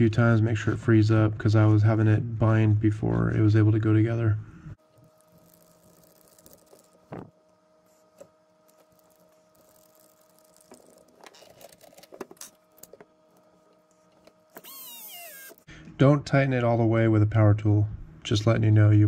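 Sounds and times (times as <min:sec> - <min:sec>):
faint steady hum: 0:00.0 - 0:19.0
small parts clicking and rattling: 0:05.0 - 0:07.0, 0:08.7 - 0:13.0.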